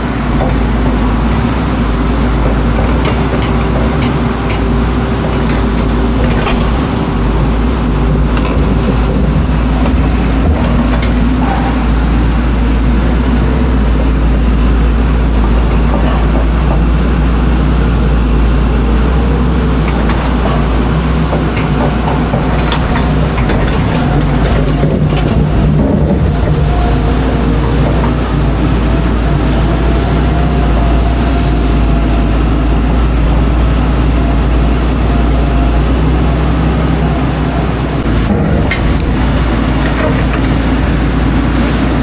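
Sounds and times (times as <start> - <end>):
diesel engine running: 0.0 - 42.0
digging knocks and clatter: 0.0 - 42.0.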